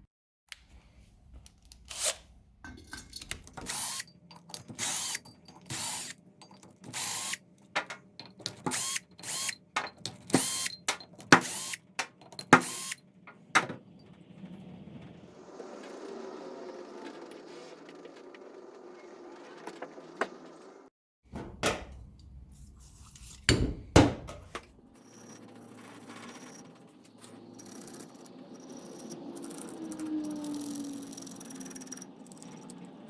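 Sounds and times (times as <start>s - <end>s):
metal tools clinking on workbench: 2.7s - 7.0s, 7.8s - 12.7s.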